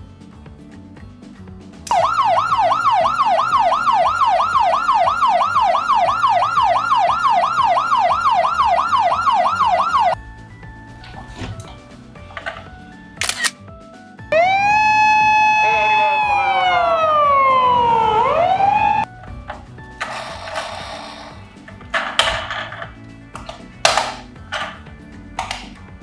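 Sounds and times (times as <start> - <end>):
toy electronic siren wailing: 1.9 - 10.2, 14.4 - 19.4
background music: 1.9 - 13.6, 19.0 - 26.0.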